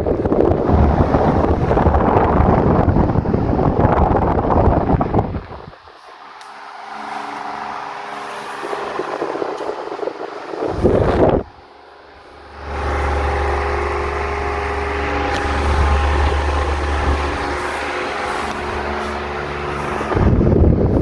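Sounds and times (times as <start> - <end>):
desk fan motor hum: 0.0 - 21.0
loud clatter: 0.0 - 21.0.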